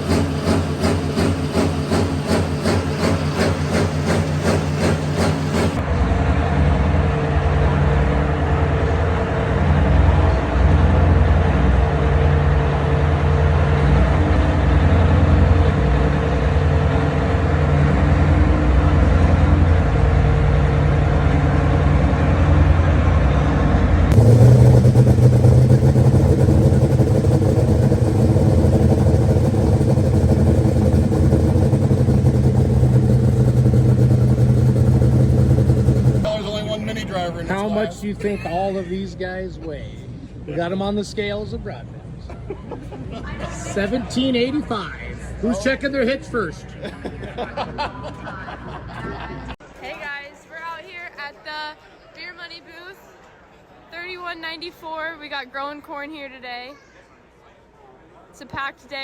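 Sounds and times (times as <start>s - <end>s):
engines running at high revs: 0.0s - 36.4s.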